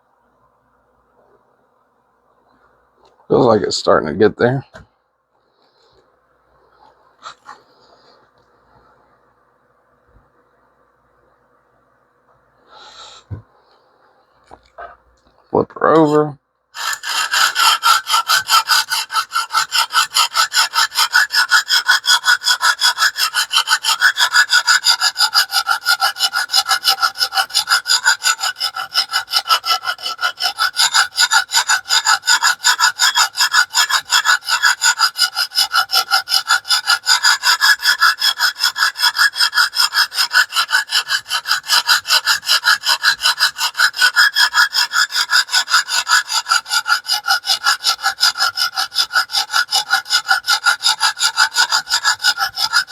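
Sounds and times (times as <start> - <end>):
sharpening stone scraping knife edge: 16.8 - 52.9.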